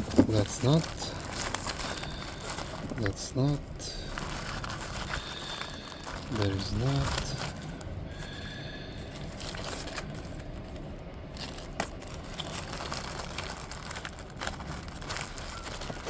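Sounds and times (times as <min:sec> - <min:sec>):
handling noise: 0:00.0 - 0:08.4.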